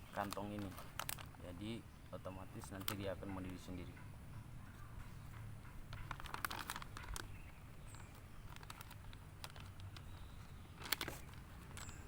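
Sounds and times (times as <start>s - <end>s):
plastic packaging crinkling: 0.0s - 1.4s, 6.0s - 7.4s, 8.4s - 12.0s.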